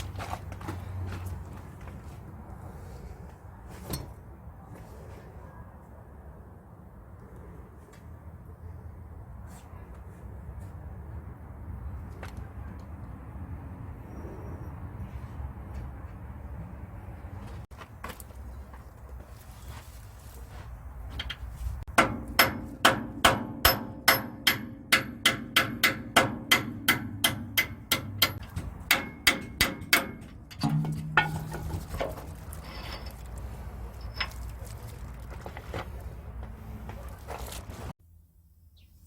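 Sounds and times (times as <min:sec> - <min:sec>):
hammer striking metal: 0:21.9 - 0:31.7.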